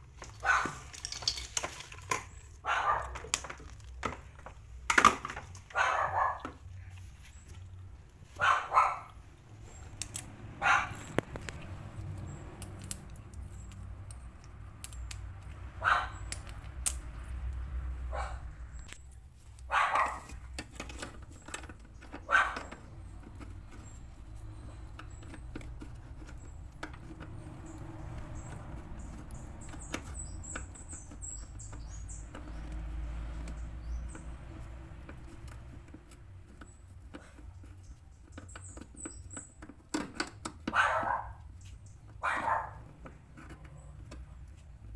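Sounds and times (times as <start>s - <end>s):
dog barking: 0.4s - 0.8s, 2.6s - 3.2s, 5.7s - 6.6s, 8.4s - 9.2s, 10.6s - 11.0s, 15.8s - 16.2s, 18.1s - 18.5s, 19.7s - 20.3s, 22.2s - 22.7s, 40.7s - 41.4s, 42.2s - 42.9s.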